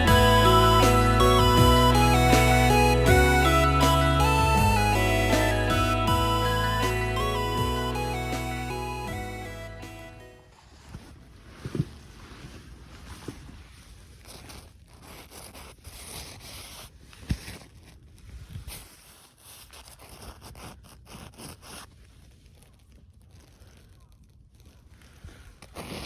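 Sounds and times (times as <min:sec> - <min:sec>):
rustling and scraping of objects: 0:10.5 - 0:26.0.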